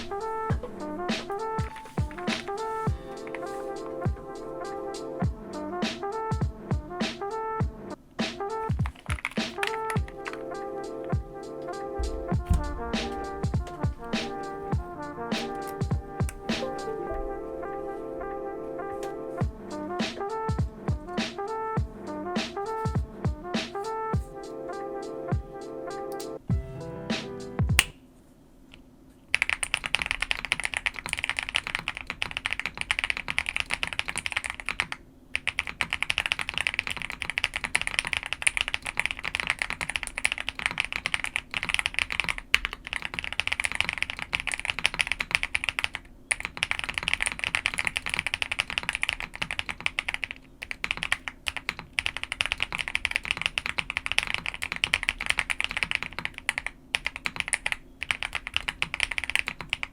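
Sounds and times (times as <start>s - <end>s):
fast mechanical keyboard typing: 8.8s - 10.4s, 29.3s - 59.9s.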